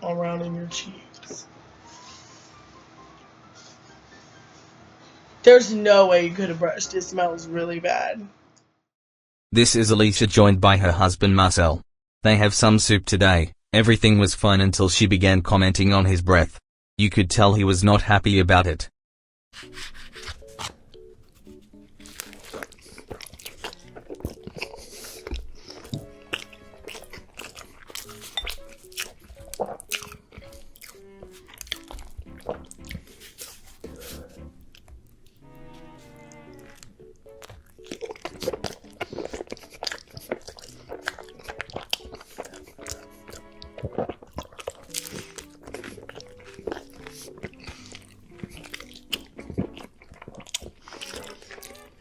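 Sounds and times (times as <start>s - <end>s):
background music: 19.6s - 52.0s
person crunching food: 19.6s - 52.0s.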